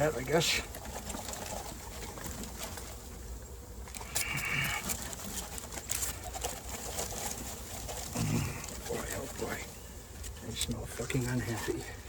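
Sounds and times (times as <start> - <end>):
birds calling faintly: 0.0 - 12.0.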